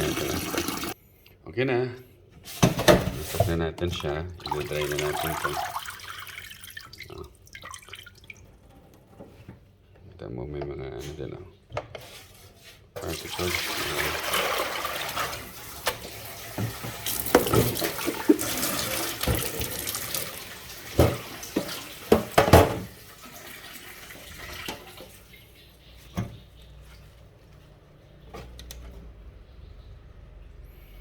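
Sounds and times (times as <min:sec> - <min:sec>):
tap water running into sink: 0:00.0 - 0:01.0, 0:04.0 - 0:08.4, 0:13.0 - 0:25.2.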